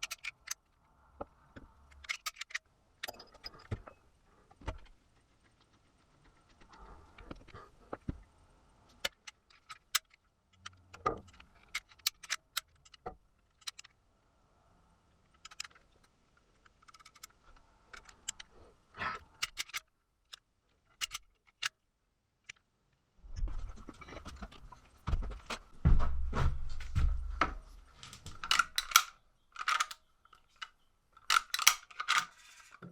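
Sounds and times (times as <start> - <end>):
small hard objects clicking: 28.0 - 32.9.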